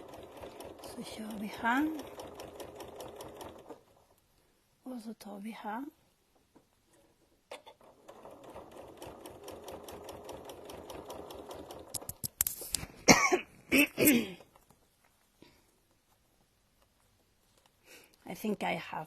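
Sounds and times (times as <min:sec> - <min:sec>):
sewing machine stitching: 0:00.0 - 0:04.0, 0:07.5 - 0:12.2
woman coughing and clearing throat: 0:13.0 - 0:14.4.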